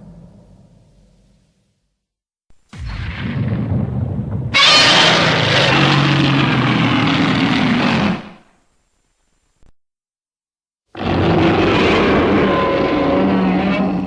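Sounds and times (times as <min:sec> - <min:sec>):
loud harsh monster roar: 0:04.6 - 0:08.4, 0:11.0 - 0:14.0
low rough growl: 0:04.9 - 0:08.4.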